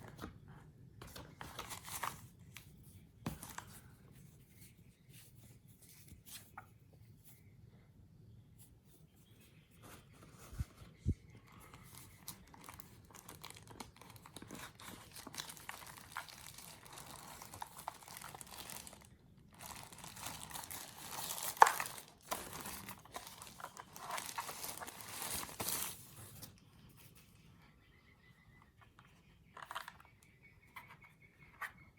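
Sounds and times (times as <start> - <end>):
packaging crinkling: 11.7 - 26.5.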